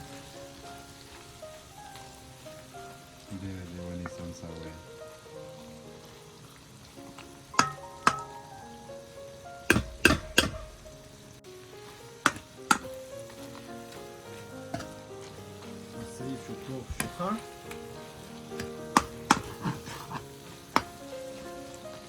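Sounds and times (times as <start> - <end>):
food sizzling in a wok: 0.0 - 22.0
metal utensil knocking on pan: 7.6 - 8.4, 9.7 - 10.9, 12.2 - 12.9, 14.7 - 15.0, 18.6 - 21.0.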